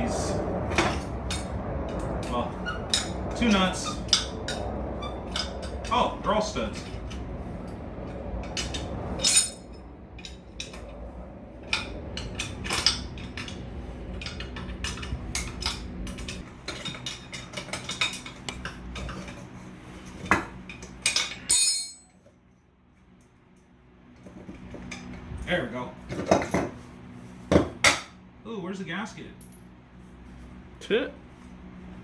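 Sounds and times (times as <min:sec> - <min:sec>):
wrench clinking on metal: 0:09.2 - 0:09.6, 0:21.4 - 0:22.1, 0:29.4 - 0:29.6
ringing metallic knocks: 0:21.5 - 0:22.1.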